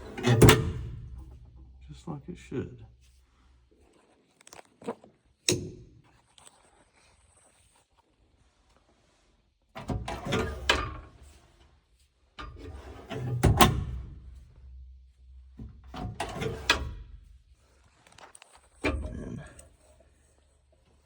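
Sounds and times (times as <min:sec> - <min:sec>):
glovebox door clattering: 0:00.0 - 0:01.4.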